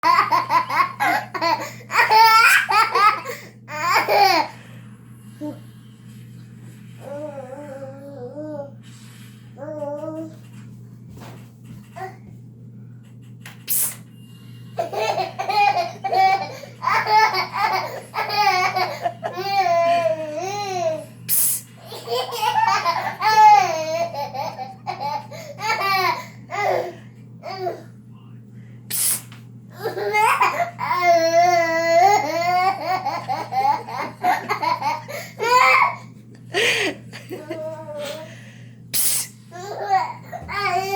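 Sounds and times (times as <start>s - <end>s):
faint steady hum: 0.0s - 40.9s
girl laughing: 17.0s - 19.7s, 36.5s - 37.8s.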